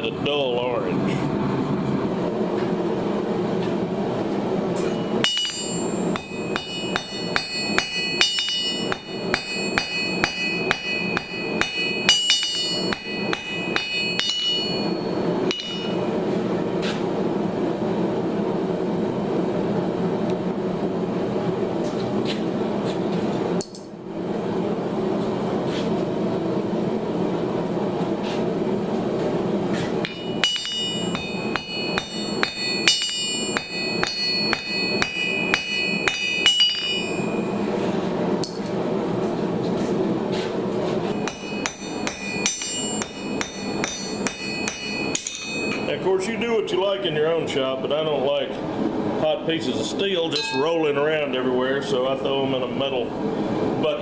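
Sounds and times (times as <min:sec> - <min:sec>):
forge running: 0:00.2 - 0:18.3, 0:26.6 - 0:46.4
hammer striking steel on anvil: 0:04.8 - 0:16.2, 0:30.0 - 0:37.6, 0:41.1 - 0:46.0, 0:50.3 - 0:50.9.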